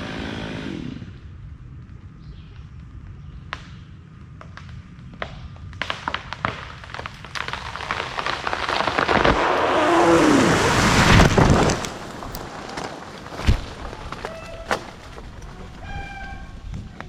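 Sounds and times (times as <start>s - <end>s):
wood cracking and snapping: 4.4s - 15.8s
tree creaking: 4.5s - 17.0s
tree crashing down: 5.8s - 16.8s
rush of branches and leaves: 6.9s - 17.0s.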